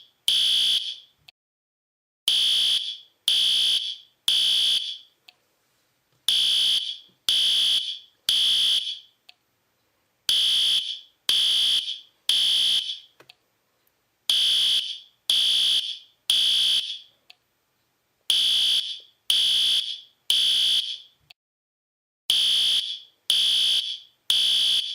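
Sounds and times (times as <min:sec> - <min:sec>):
fire alarm beeping: 0:00.3 - 0:01.1, 0:02.3 - 0:05.1, 0:06.3 - 0:09.1, 0:10.3 - 0:13.1, 0:14.3 - 0:17.1, 0:18.3 - 0:21.2, 0:22.3 - 0:24.9.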